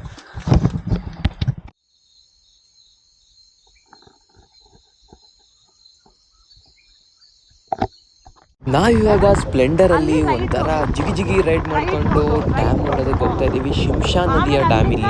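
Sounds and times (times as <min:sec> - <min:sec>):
insects chirring: 0:01.8 - 0:15.0
loud unidentified sound: 0:08.7 - 0:15.0.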